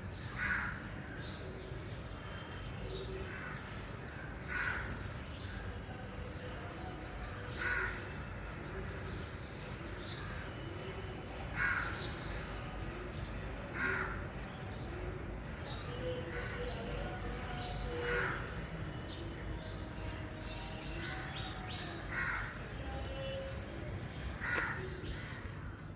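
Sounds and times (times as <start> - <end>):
crow cawing: 18.0 - 18.5, 22.1 - 22.6, 24.4 - 25.0.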